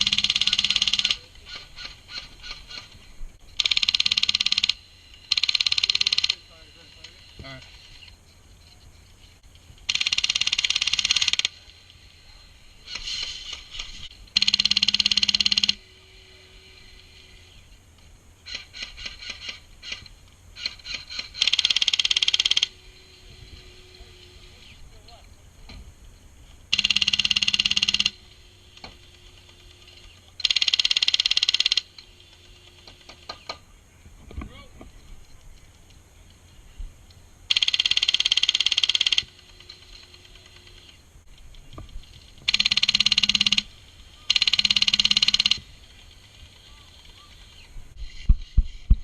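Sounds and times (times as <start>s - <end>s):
airsoft machine gun firing: 0.0s - 1.2s, 3.6s - 6.4s, 9.9s - 11.6s, 12.9s - 15.8s, 20.6s - 22.7s, 26.7s - 28.2s, 30.4s - 31.9s, 37.5s - 40.6s, 42.5s - 43.7s, 44.3s - 45.7s.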